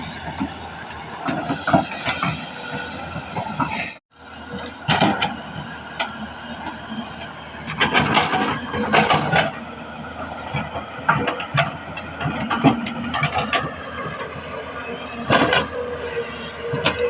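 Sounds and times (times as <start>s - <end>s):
excavator engine: 0.0s - 17.0s
metallic clanking and scraping: 0.0s - 17.0s.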